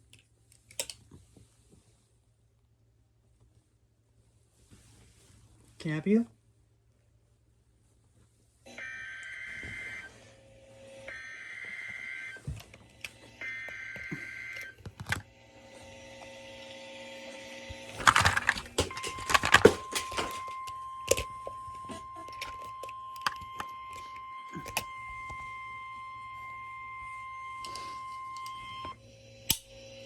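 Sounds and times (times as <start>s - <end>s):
steady warning alarm tone: 8.7s - 15.2s, 17.8s - 30.0s.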